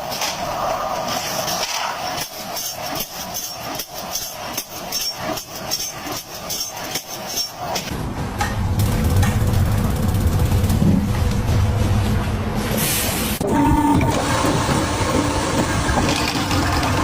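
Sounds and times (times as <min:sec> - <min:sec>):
machinery clattering: 0:01.0 - 0:12.8.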